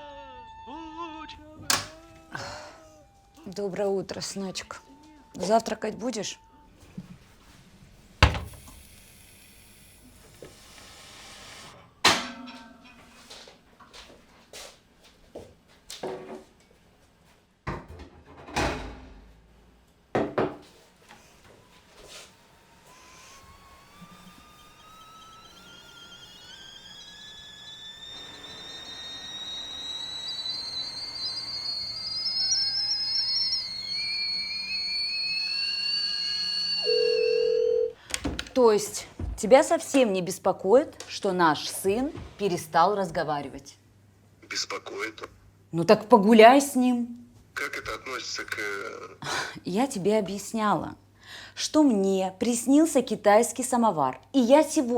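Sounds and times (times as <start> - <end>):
kettle whistling: 8.2 - 11.8, 22.1 - 37.5.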